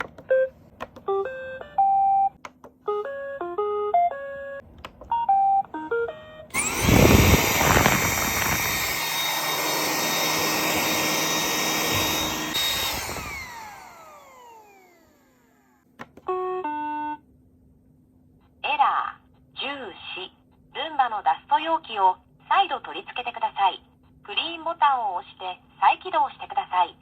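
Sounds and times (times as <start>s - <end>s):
robot vacuum beep melodies: 1.1s - 14.0s
robot vacuum motors whining: 6.5s - 15.8s.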